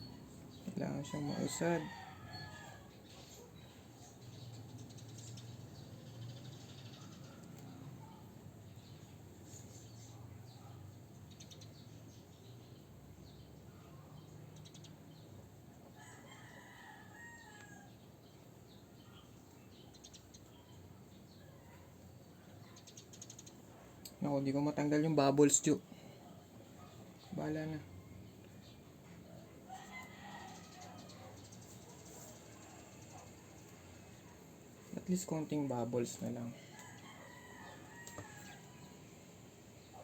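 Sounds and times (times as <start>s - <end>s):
rooster crowing: 0.8s - 3.0s, 16.0s - 18.0s, 29.7s - 33.2s, 36.5s - 39.2s.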